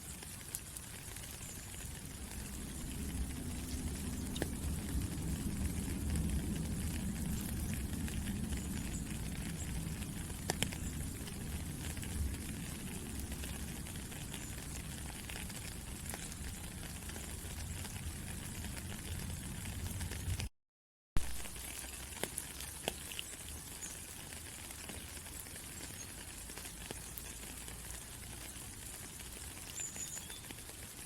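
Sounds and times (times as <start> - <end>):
steady rain falling: 0.0 - 20.5, 21.2 - 31.0
single raindrop hits: 2.2 - 11.2.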